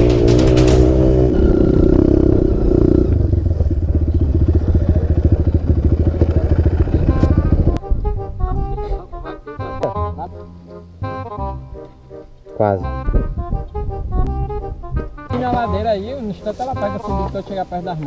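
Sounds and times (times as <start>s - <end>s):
motorcycle engine running: 0.0s - 7.8s
music: 6.8s - 18.0s.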